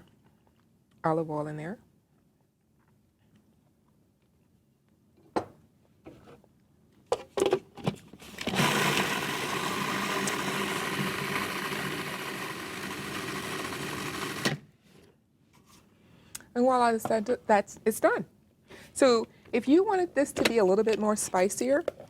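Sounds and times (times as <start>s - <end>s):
blender motor running: 8.4s - 14.6s.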